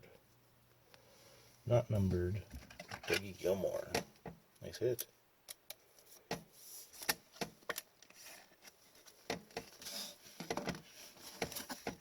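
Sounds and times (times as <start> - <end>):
soft rustles: 8.0 - 12.0.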